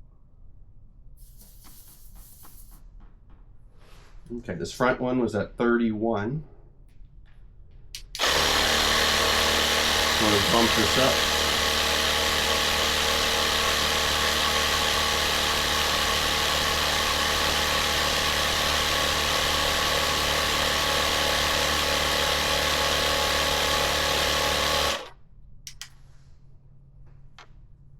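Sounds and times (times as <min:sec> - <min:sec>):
air compressor motor running: 0:08.0 - 0:25.9
light clicks: 0:25.7 - 0:26.0.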